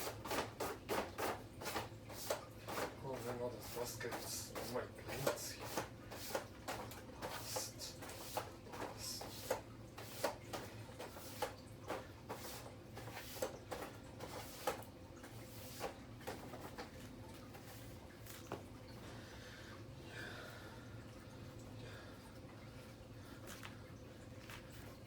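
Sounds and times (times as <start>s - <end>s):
low steady hum: 11.6s - 25.0s.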